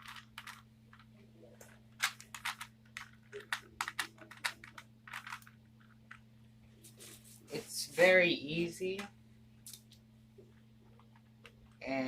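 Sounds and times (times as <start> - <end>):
plastic puzzle cube clicking: 2.0 - 5.5.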